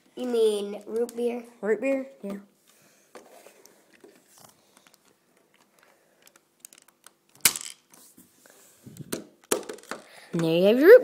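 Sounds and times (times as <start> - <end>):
small plastic clicks: 4.7 - 7.8.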